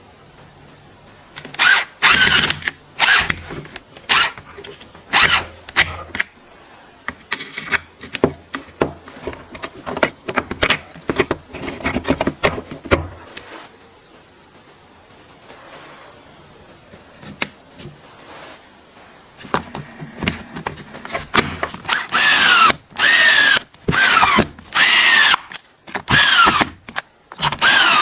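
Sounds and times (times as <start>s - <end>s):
tool parts clicking and scraping: 1.4s - 6.4s, 7.1s - 13.5s, 19.4s - 28.0s.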